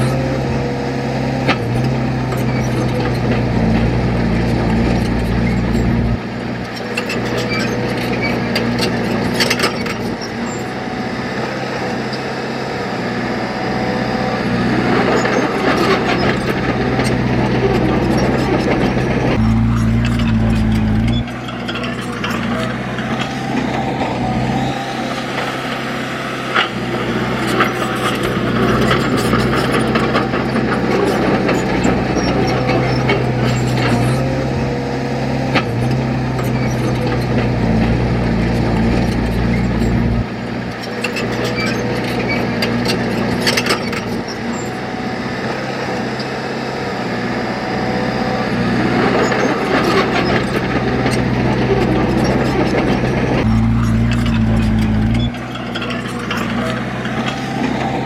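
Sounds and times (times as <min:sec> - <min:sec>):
heavy machine engine running: 0:00.0 - 0:58.0.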